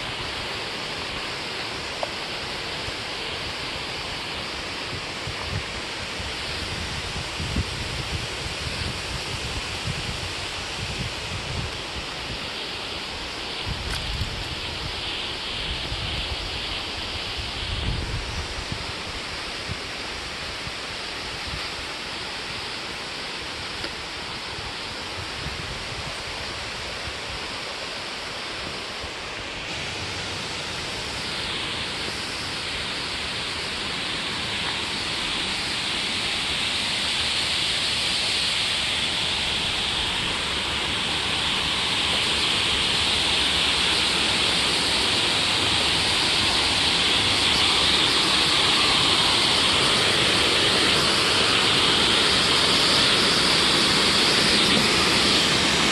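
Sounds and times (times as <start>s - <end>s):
wind rumble on microphone: 0.0s - 22.7s, 23.5s - 27.6s
running water rushing: 0.0s - 55.9s.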